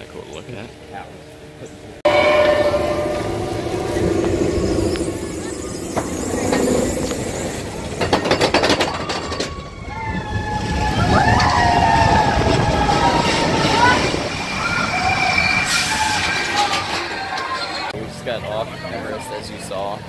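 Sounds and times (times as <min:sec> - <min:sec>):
wheel squeal: 0:02.1 - 0:17.9
roller coaster rattling on track: 0:02.1 - 0:18.0.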